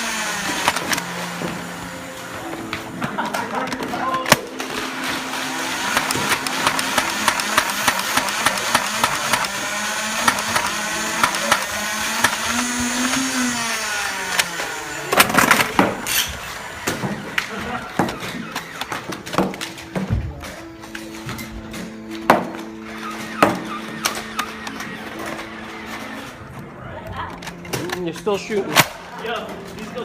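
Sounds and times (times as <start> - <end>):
small motor whirring: 0.0 - 2.5, 5.0 - 19.0, 22.6 - 26.6
rapid sharp clicks: 5.8 - 12.8.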